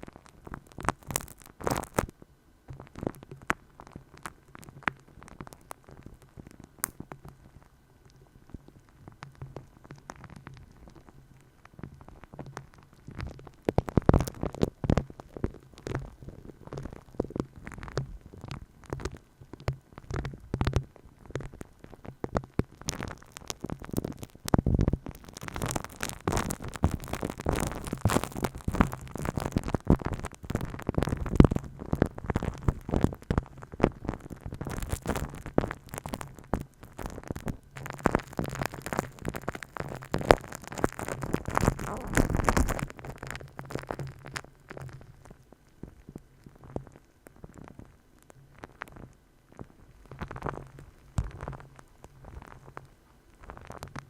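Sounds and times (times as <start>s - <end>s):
fingers tapping a microphone: 11.8s - 54.0s
fingers rubbing a microphone: 22.9s - 45.1s.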